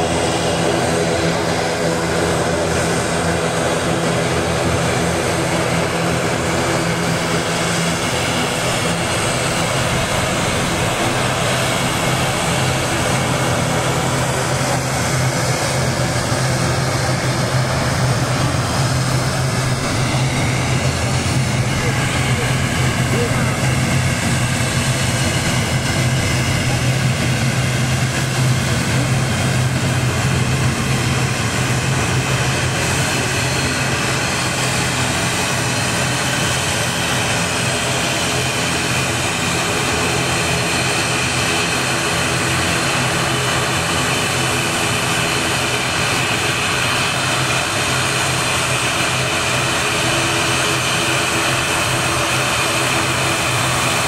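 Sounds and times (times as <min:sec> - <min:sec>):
airplane engines droning: 0:00.0 - 0:54.0.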